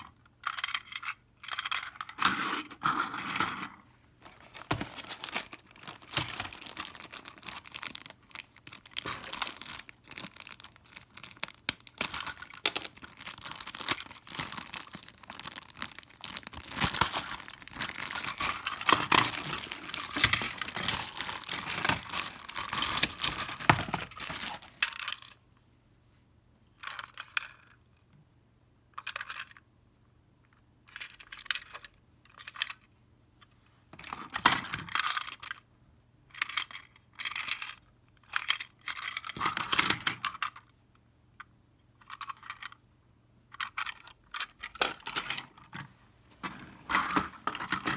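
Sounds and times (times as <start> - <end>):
packaging tearing and rustling: 4.2 - 24.9.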